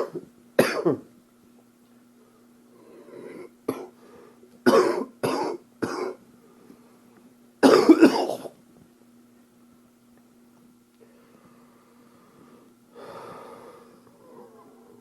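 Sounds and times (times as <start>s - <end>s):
man coughing: 0.0s - 1.1s, 3.7s - 4.0s, 4.6s - 6.2s, 7.6s - 8.6s.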